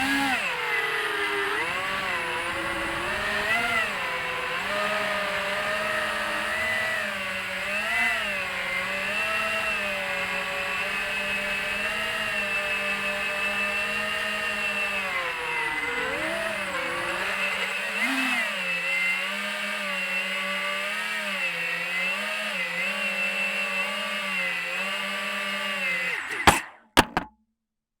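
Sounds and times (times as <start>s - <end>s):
quadcopter propellers buzzing: 0.0s - 26.8s
sharp knocks: 26.5s - 27.4s.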